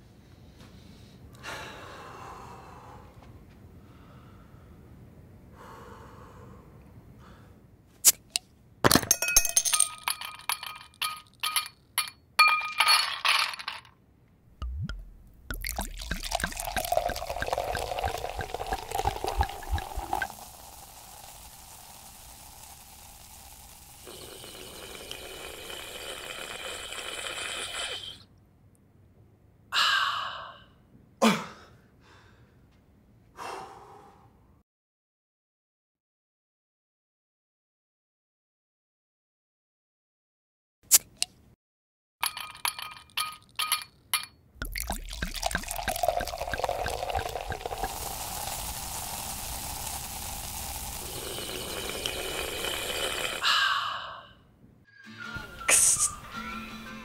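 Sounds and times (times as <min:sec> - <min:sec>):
glass bottle clinks: 0:08.9 - 0:13.8, 0:42.2 - 0:47.3
drink fizzing: 0:14.6 - 0:28.2, 0:44.6 - 0:53.4
liquid pouring: 0:14.6 - 0:28.2, 0:44.6 - 0:53.4
breathy exhalations: 0:33.4 - 0:34.3, 0:52.6 - 0:54.5.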